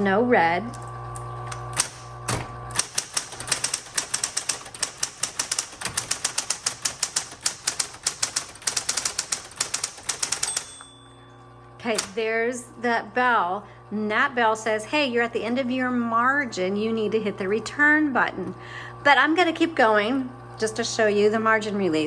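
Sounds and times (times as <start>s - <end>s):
typewriter motor hum: 0.7s - 10.8s, 11.8s - 12.3s
typewriter keystrokes: 1.5s - 10.9s, 11.8s - 12.2s.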